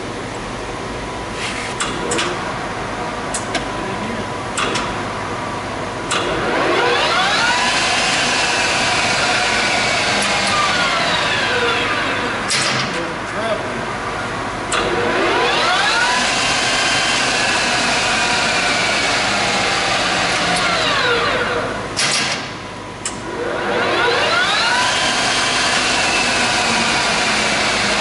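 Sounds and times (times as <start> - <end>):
lathe headstock whining: 6.6 - 12.4, 14.9 - 21.5, 23.5 - 28.0.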